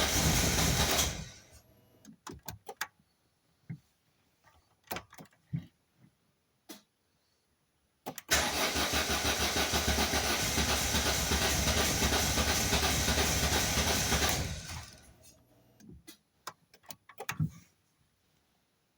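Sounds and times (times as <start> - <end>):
engine cranking on starter motor: 0.0 - 1.6, 8.3 - 15.1.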